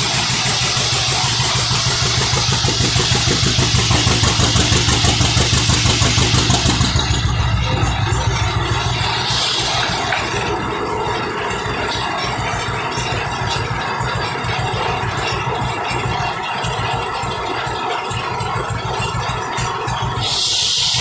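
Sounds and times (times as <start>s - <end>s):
engine running with low pulse: 0.0s - 21.0s.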